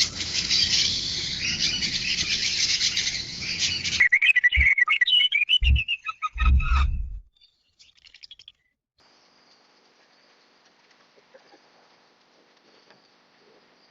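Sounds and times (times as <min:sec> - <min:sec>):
chorus of bird chirps: 0:00.0 - 0:08.7
bird quick repeated chirps: 0:03.8 - 0:07.2
low thumps: 0:05.6 - 0:07.3.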